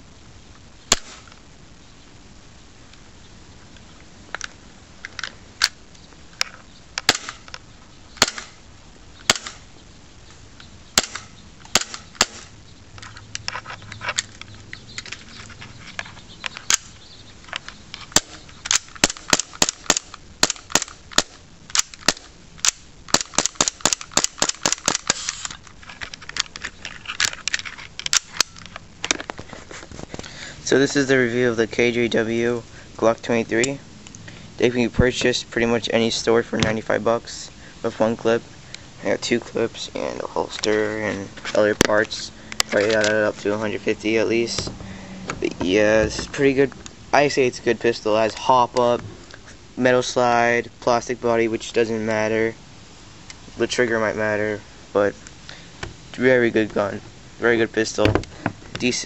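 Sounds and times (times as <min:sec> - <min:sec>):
airsoft pistol shots: 0:00.9 - 0:01.3, 0:07.0 - 0:07.5, 0:08.2 - 0:08.6, 0:09.3 - 0:09.6, 0:11.0 - 0:12.5, 0:18.2 - 0:25.5
pistol slide cycling: 0:18.1 - 0:26.5.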